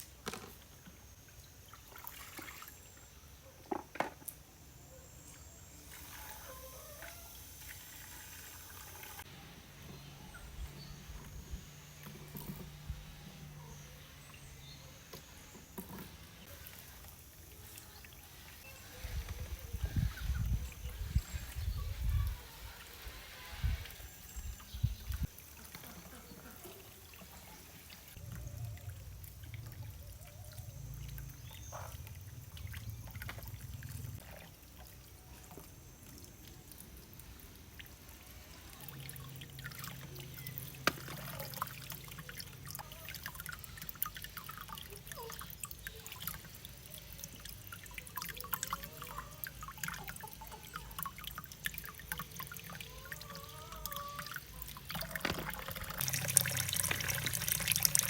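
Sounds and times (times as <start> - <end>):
water trickling and pouring: 0.2 - 3.9, 5.2 - 58.0.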